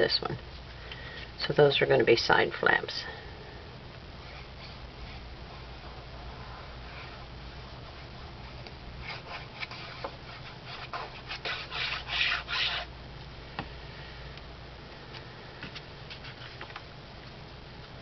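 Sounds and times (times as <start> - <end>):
cardstock rustling and rubbing: 4.2 - 12.9, 15.6 - 16.9.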